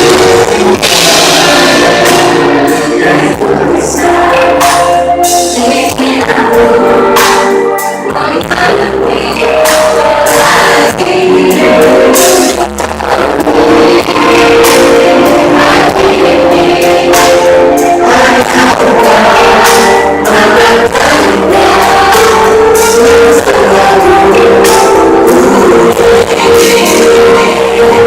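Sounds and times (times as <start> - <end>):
live pop band through loudspeaker: 0.0 - 28.0.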